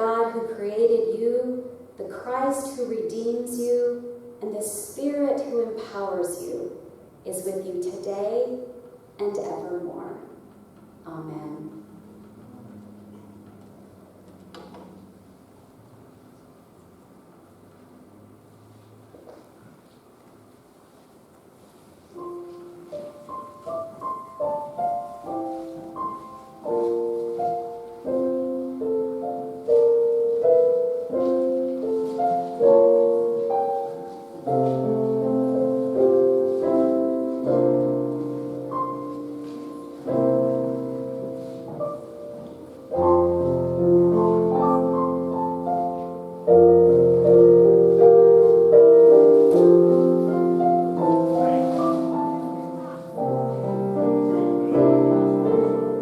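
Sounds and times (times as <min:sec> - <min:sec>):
slow piano melody over chords: 0:21.8 - 0:56.0.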